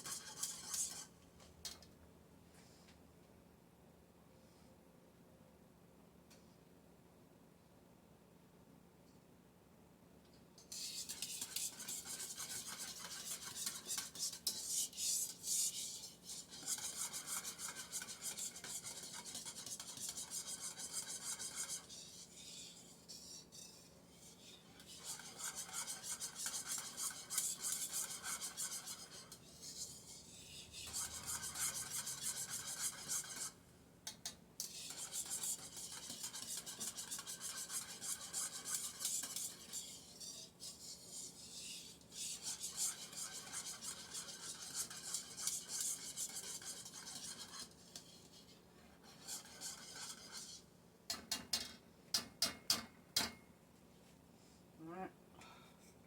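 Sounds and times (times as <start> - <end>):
utensil scraping a pot: 0.0 - 1.2, 10.6 - 51.8.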